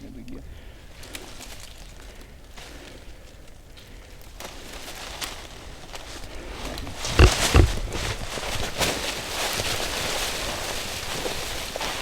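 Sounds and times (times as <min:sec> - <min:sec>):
low grunts: 0:06.9 - 0:08.2.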